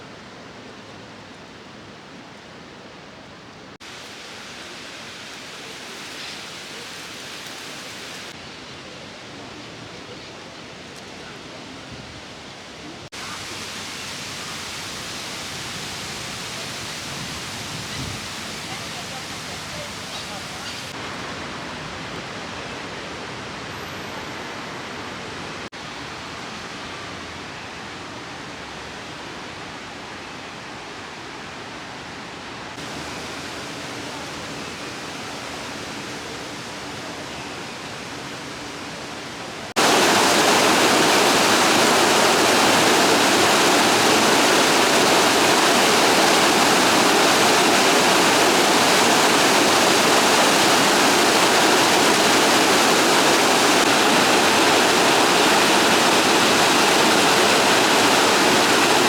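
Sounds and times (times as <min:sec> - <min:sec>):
splashing water rushing: 0:39.6 - 0:59.0.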